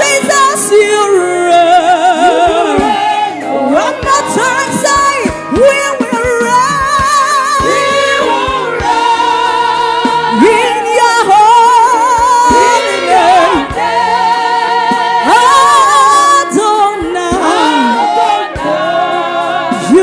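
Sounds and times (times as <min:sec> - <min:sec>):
person singing with vibrato: 0:00.0 - 0:20.0
held accompaniment chords: 0:00.4 - 0:20.0
low beats: 0:02.0 - 0:15.9.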